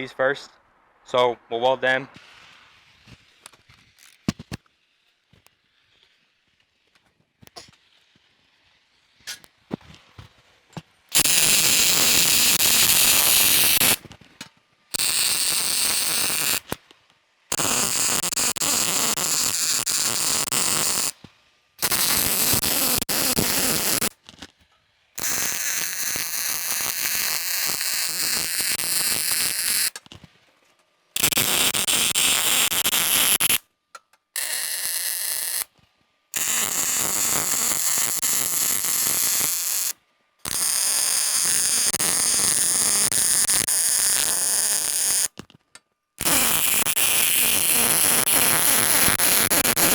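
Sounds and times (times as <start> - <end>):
welding arc crackling: 11.1 - 14.0, 14.9 - 16.8, 17.5 - 21.2, 21.8 - 24.2, 25.2 - 30.0, 31.2 - 33.6, 34.4 - 35.7, 36.4 - 45.4, 46.2 - 49.9.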